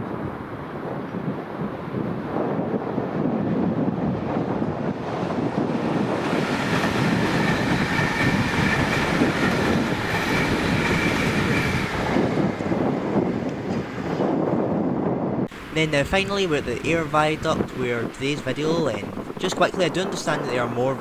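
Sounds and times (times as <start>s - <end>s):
train wheels clattering on rails: 6.2s - 12.8s.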